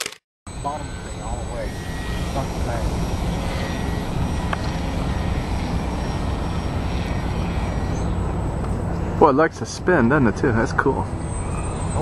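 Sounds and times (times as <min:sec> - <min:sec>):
high steady whine: 0:00.5 - 0:12.0
model airplane motor buzzing: 0:00.6 - 0:09.2.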